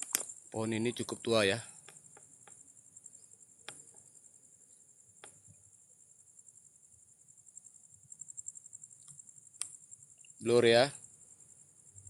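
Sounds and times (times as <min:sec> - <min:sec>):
night insects chirring: 0:00.0 - 0:12.0
faint clicks: 0:01.7 - 0:02.6, 0:03.6 - 0:04.1, 0:09.0 - 0:10.4.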